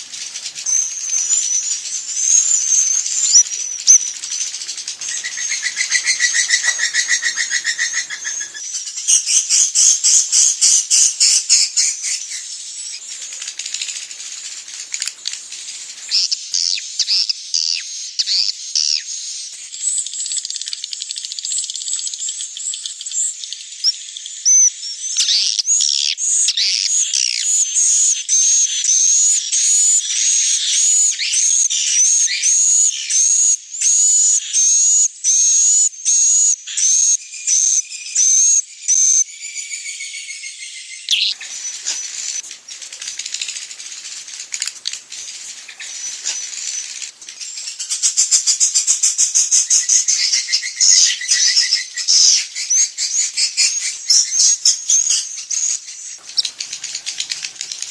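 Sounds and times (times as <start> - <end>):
swiftlet calls: 0.0 - 23.4, 41.1 - 57.9
twittering chirps: 0.0 - 57.9.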